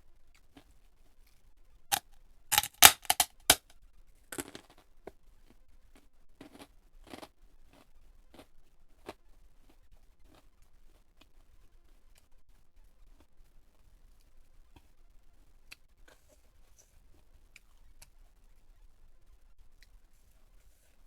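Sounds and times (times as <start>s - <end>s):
crunching of crisp food chewed: 4.4s - 11.3s.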